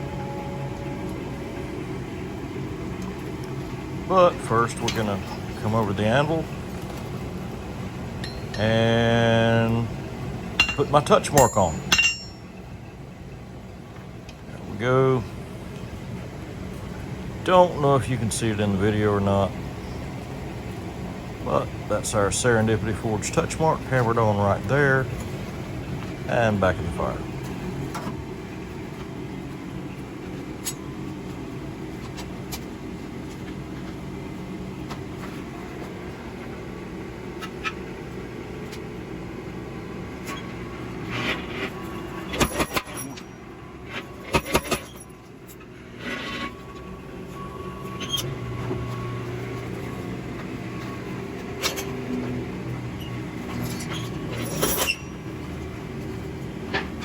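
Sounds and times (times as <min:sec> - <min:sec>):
steady motor drone: 0:00.0 - 0:57.0
sharp metallic clanks: 0:08.2 - 0:08.8, 0:10.6 - 0:12.6, 0:42.3 - 0:45.6.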